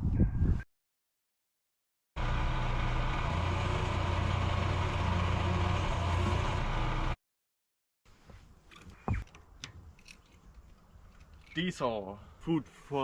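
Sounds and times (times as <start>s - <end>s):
diesel engine running: 2.2s - 7.2s.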